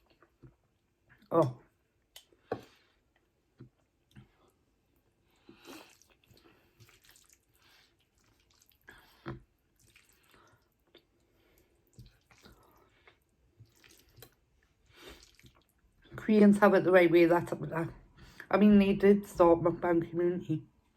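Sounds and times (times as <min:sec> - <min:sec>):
person chewing and slurping: 0:05.4 - 0:15.8.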